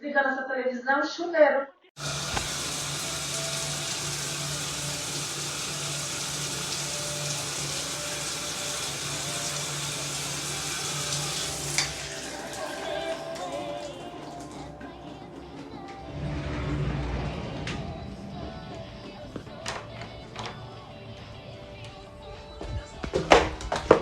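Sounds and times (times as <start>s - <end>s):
shower spraying water: 2.0s - 14.8s
low hum: 15.2s - 20.1s.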